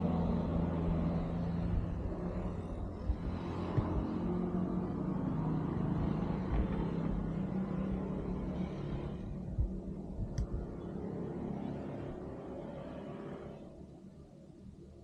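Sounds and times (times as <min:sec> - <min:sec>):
motorcycle engine running: 0:01.3 - 0:08.2.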